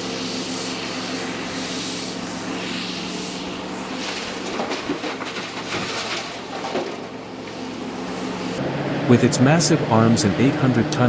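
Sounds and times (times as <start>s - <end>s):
excavator engine drone: 0.0s - 11.0s
metal clanks: 4.0s - 7.8s.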